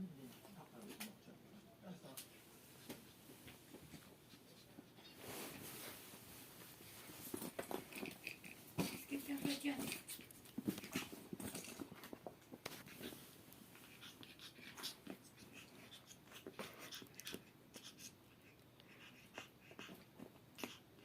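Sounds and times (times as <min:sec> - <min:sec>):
puppy breathing and snuffling: 0:00.2 - 0:21.0.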